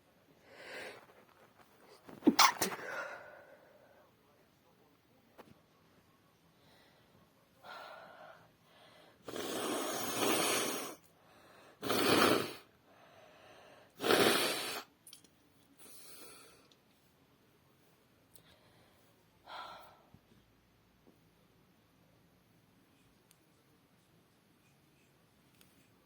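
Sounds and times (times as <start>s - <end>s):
quiet breaths: 0.0s - 2.1s, 2.8s - 26.0s
woman sneezing: 2.2s - 2.9s.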